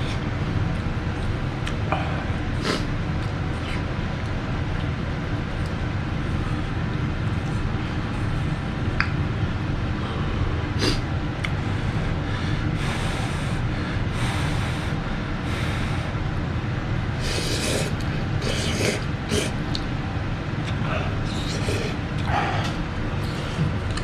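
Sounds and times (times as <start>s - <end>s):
steady low hum: 0.0s - 24.0s
noodles being slurped: 17.2s - 19.6s, 21.3s - 22.0s.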